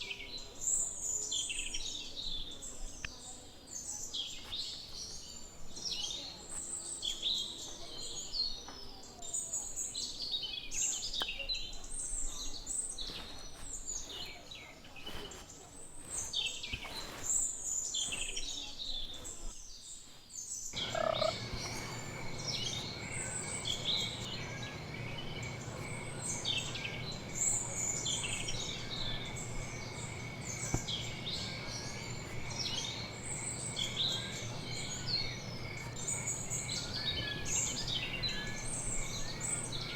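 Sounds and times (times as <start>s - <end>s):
small birds chirping: 0.0s - 39.9s
low hum: 20.8s - 39.9s
steady high whine: 20.8s - 39.9s.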